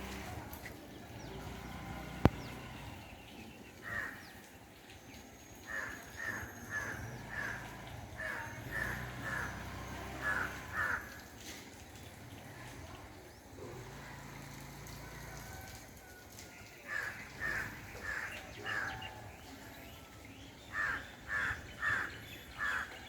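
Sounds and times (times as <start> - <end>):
crow cawing: 3.8 - 4.2, 10.2 - 11.2, 16.9 - 19.0, 20.7 - 22.9.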